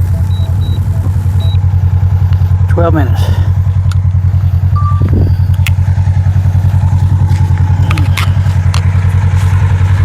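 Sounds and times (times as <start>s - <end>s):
drone motors humming: 0.0s - 10.0s
sharp clicks: 5.5s - 5.8s.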